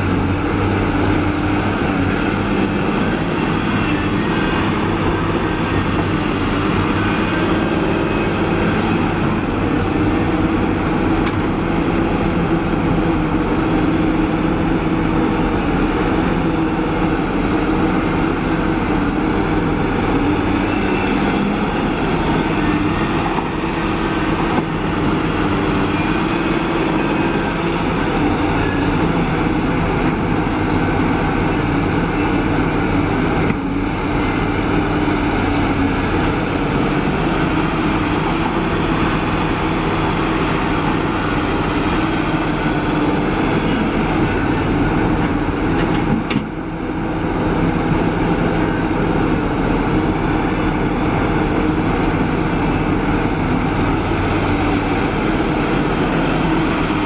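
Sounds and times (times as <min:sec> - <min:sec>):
excavator diesel engine running: 0:00.0 - 0:57.0.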